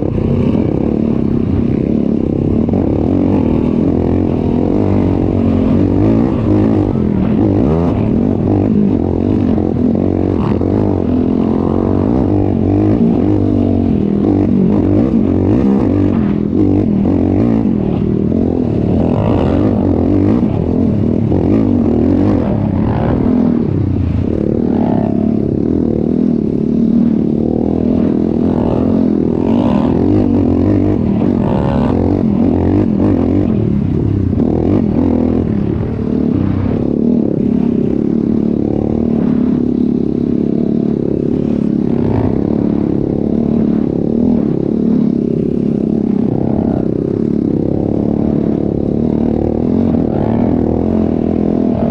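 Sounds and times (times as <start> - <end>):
atv engine revving: 0.0 - 51.9.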